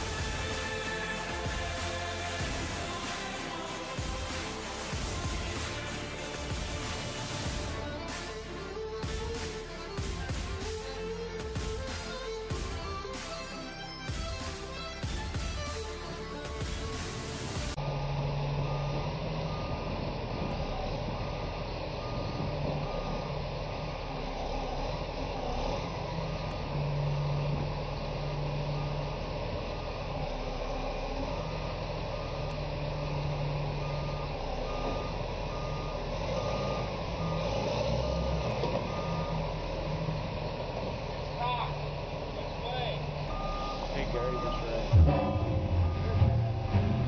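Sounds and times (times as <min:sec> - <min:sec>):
truck engine running: 0:00.0 - 0:47.0
truck reversing alarm beeping: 0:00.0 - 0:47.0.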